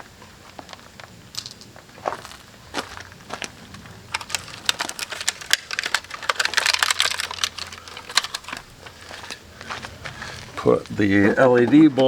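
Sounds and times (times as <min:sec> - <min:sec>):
plastic parts clicking and rattling: 0:03.7 - 0:09.4.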